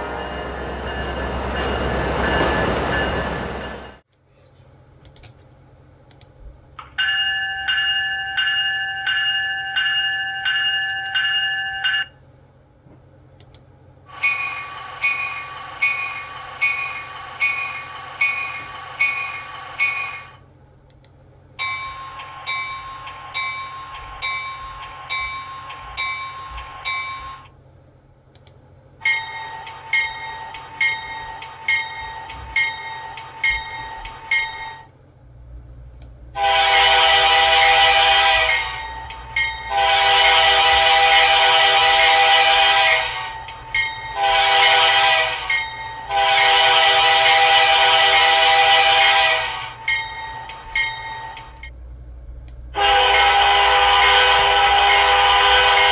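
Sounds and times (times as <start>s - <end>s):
locomotive bells ringing: 0.0s - 4.0s, 7.0s - 12.2s, 14.1s - 20.4s, 21.6s - 27.5s, 29.0s - 34.9s, 37.2s - 47.6s, 48.5s - 51.7s, 52.8s - 55.9s
steady low hum: 14.8s - 55.9s.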